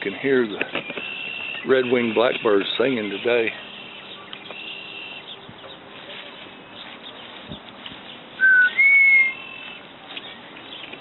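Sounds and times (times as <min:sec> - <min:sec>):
faint blackbird chatter: 0:00.0 - 0:11.0
loud two-note bird whistle: 0:08.4 - 0:09.7.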